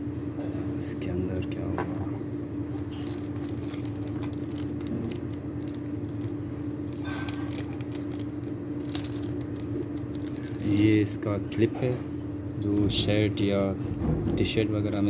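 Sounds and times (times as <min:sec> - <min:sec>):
steady low hum: 0:00.0 - 0:15.0
packaging rustling: 0:02.6 - 0:11.7, 0:12.5 - 0:15.0
packaging clicks and rattles: 0:02.8 - 0:11.9, 0:12.6 - 0:15.0.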